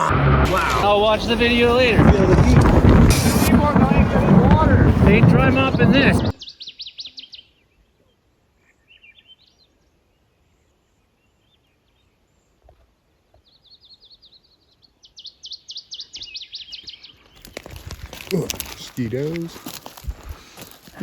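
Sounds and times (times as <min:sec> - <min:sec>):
songbird singing trill: 0:06.3 - 0:10.2, 0:13.4 - 0:17.6.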